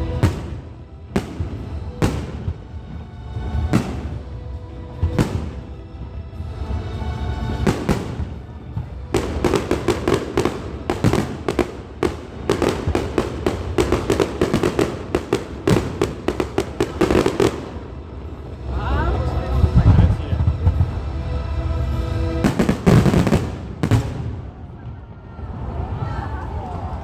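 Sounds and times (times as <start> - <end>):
fireworks bangs: 0.0 - 4.3, 4.9 - 5.8, 7.4 - 18.0, 22.2 - 25.5
music playing: 0.0 - 26.3.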